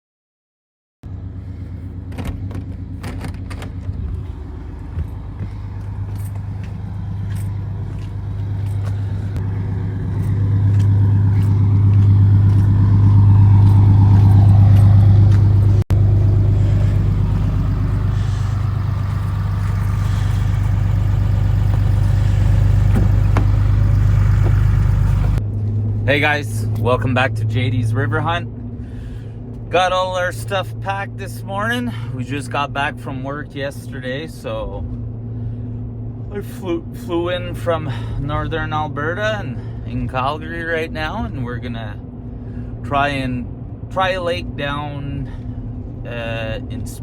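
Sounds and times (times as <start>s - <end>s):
vehicle engine and road hum: 1.0s - 47.0s.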